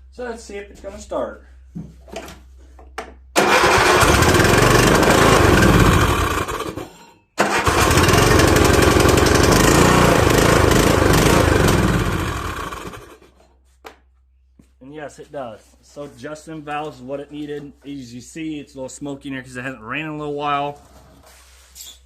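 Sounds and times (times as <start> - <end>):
riding mower engine running: 3.4 - 6.8, 7.4 - 13.2.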